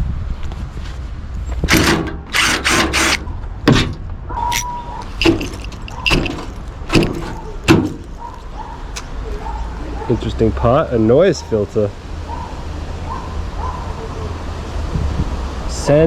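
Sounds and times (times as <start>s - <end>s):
metal parts clunking and clattering: 1.5s - 8.5s.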